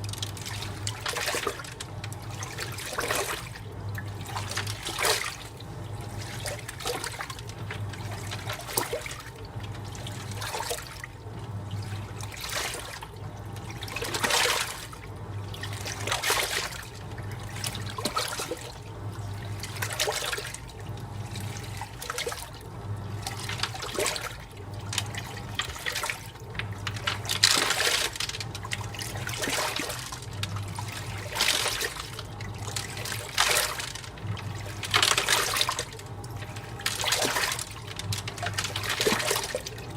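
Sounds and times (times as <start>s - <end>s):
water sloshing in washing machine: 0.0s - 39.9s.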